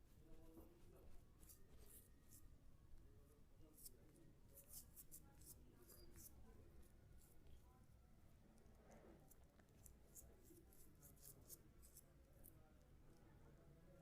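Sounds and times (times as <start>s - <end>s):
razor scraping stubble: 3.7s - 6.4s, 9.3s - 12.1s.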